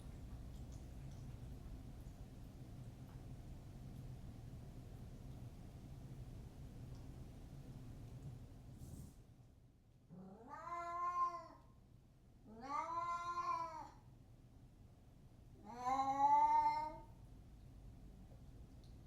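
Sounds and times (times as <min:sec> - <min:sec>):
cat meowing: 0:10.2 - 0:11.6, 0:12.5 - 0:14.0, 0:15.6 - 0:17.1.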